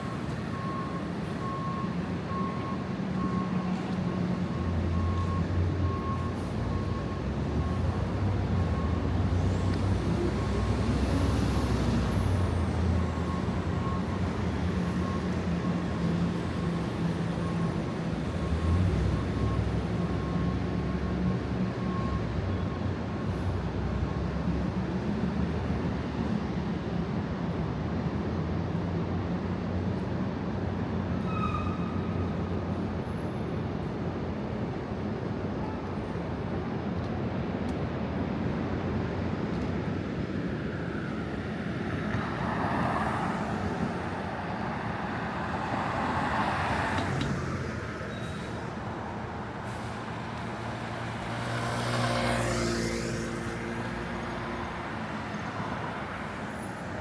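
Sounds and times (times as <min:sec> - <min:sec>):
vehicles driving past: 0:35.8 - 0:57.0.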